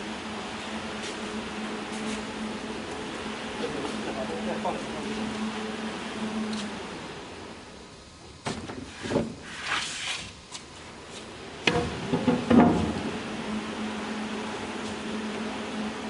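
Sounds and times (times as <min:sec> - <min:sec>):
conveyor motor hum: 0:00.0 - 0:16.0
wooden panels knocking and clattering: 0:11.7 - 0:13.0.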